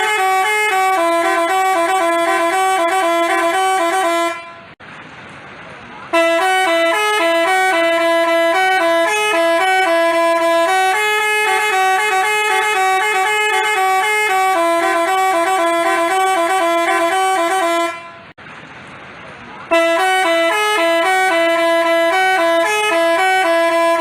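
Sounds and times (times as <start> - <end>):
musical bus horn playing a tune: 0.0 - 4.8, 6.1 - 18.4, 19.7 - 24.0.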